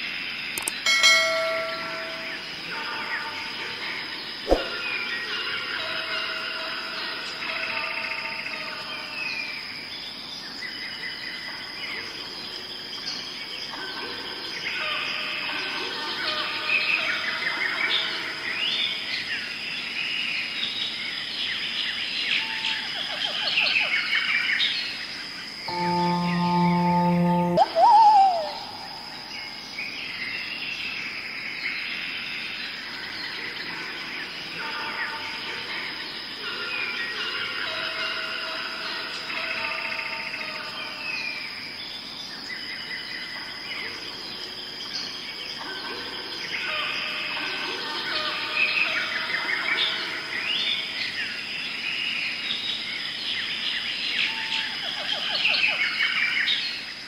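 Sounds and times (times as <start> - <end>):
steady high-pitched tone: 0.9 - 2.8, 25.7 - 29.4
bird calls: 26.6 - 29.6.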